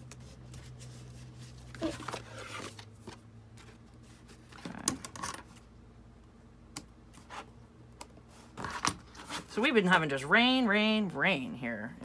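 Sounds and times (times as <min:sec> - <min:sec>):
faint steady hum: 0:00.0 - 0:12.0
cardboard box rustling: 0:00.6 - 0:04.7.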